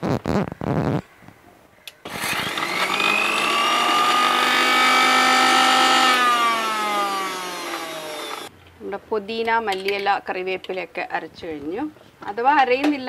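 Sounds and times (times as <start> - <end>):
mixer grinder motor whining: 2.0 - 8.5.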